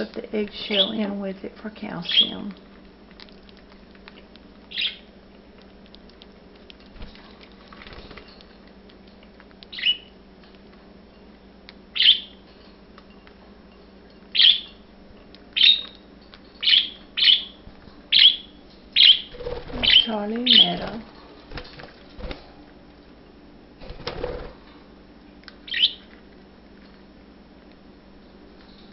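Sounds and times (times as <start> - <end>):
budgerigars chirping: 4.7 - 5.1, 9.7 - 10.1, 12.0 - 12.3, 14.4 - 14.8, 15.6 - 15.9, 16.6 - 20.9, 25.7 - 26.0.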